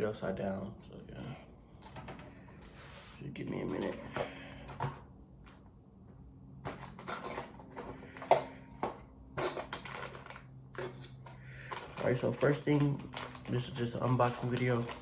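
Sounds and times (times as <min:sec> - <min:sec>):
case contents rummaged by hand: 0:03.6 - 0:05.1, 0:06.6 - 0:15.0.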